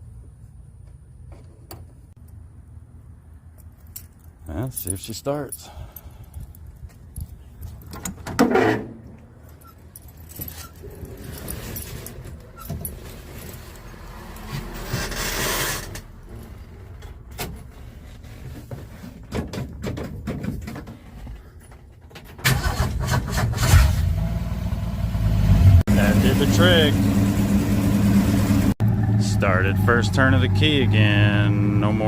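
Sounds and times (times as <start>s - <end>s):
keys jangling: 9.4s - 13.7s
car engine starting and running: 22.4s - 32.0s.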